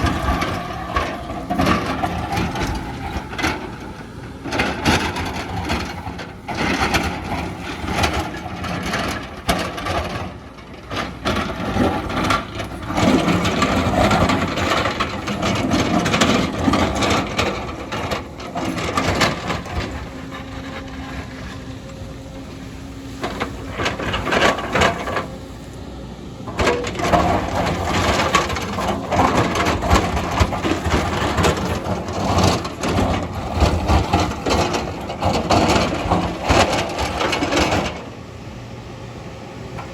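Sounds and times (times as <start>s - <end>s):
excavator diesel engine: 0.0s - 39.9s
bucket scraping through soil and rock: 11.4s - 21.7s.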